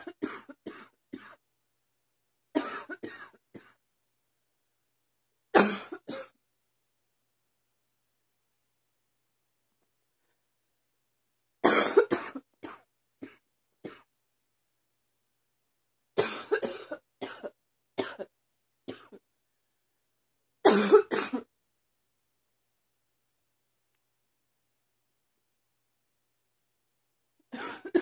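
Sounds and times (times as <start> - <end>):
woman coughing: 0.0 - 1.4, 2.6 - 3.8, 5.6 - 6.3, 11.6 - 14.1, 16.2 - 18.3, 20.6 - 21.5, 27.5 - 28.0.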